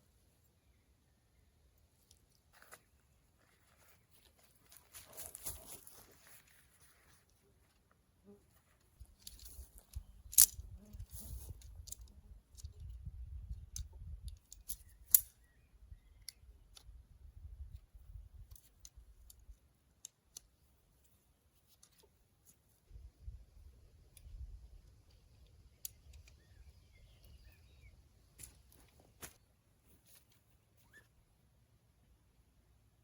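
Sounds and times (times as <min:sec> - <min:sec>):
camping gear clicks and rattles: 0:01.9 - 0:15.6, 0:17.6 - 0:22.8, 0:24.2 - 0:31.0.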